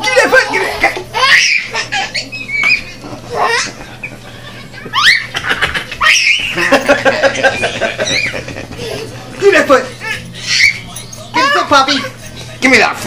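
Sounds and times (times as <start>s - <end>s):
person laughing: 0.5s - 10.2s.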